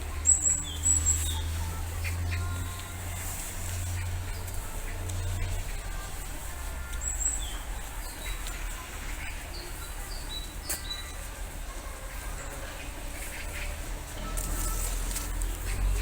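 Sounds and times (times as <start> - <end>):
low background rumble: 0.0 - 10.6
small birds chirping: 0.0 - 16.0.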